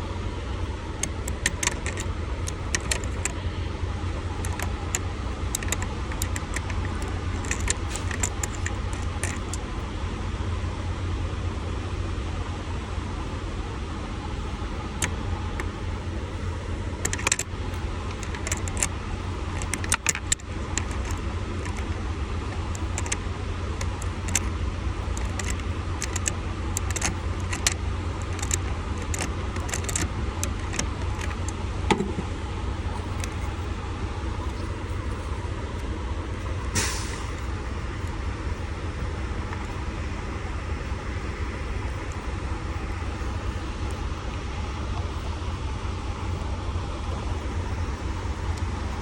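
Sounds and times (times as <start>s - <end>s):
steady low hum: 0.0s - 49.0s
metallic clicks of hand tools: 1.0s - 3.3s, 4.4s - 9.6s, 17.0s - 17.5s, 18.1s - 18.9s, 19.5s - 23.2s, 25.2s - 32.2s.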